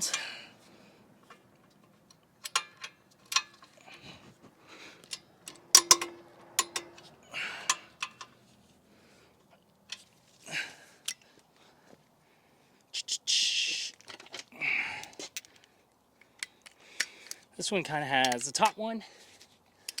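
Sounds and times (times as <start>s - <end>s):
torque wrench ratcheting: 5.5s - 8.3s.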